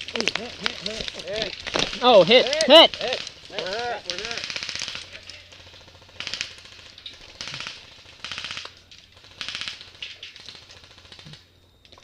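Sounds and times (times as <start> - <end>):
airsoft gun full-auto bursts: 1.8 - 11.4.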